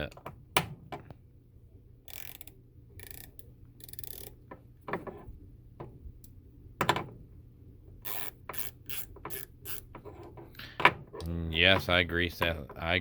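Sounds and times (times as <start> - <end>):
hand ratchet clicking: 2.1 - 4.4, 8.0 - 9.9.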